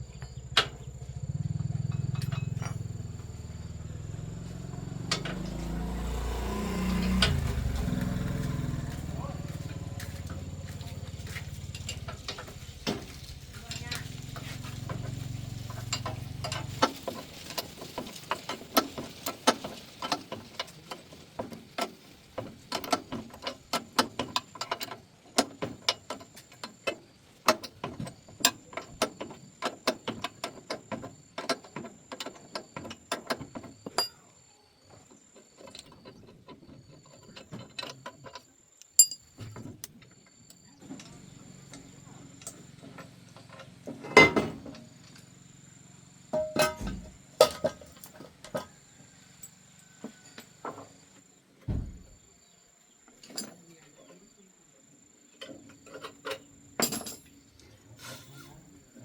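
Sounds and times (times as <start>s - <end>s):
hand tools clicking on metal parts: 1.9s - 3.3s, 5.0s - 5.8s, 6.8s - 34.2s, 35.4s - 41.8s.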